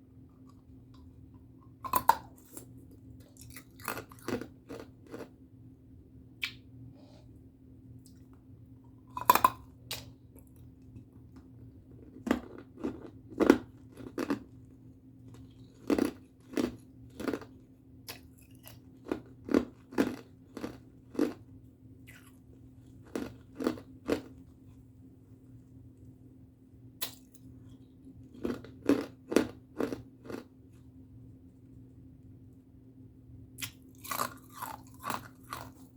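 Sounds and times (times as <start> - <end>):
faint steady hum: 0.0 - 35.9
ice being bitten and chewed: 1.8 - 5.3, 9.1 - 10.1, 12.1 - 14.5, 15.3 - 21.4, 22.1 - 24.4, 28.3 - 30.5, 33.6 - 35.9.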